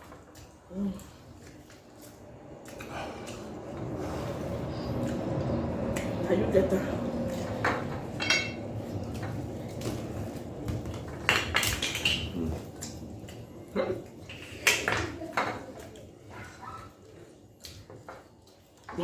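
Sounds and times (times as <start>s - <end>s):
cutlery clinking on plates: 8.1s - 8.6s.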